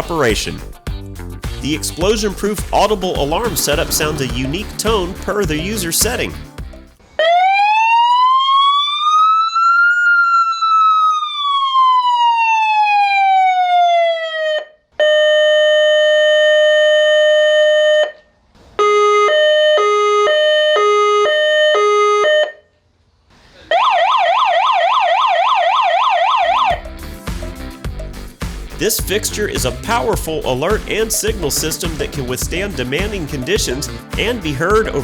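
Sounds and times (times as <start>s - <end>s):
music: 0.0s - 7.0s, 26.7s - 35.0s
alarm horn siren tones: 7.2s - 18.2s, 18.8s - 22.7s, 23.7s - 26.9s.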